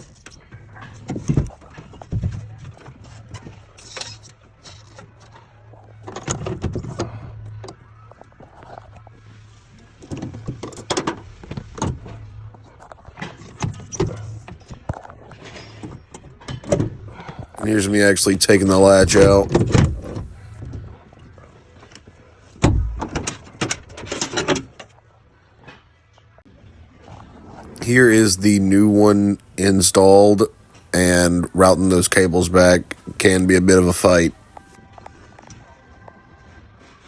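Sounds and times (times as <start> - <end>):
tools and parts clicking and rattling: 0.0 - 9.4, 10.0 - 17.8, 21.8 - 25.0.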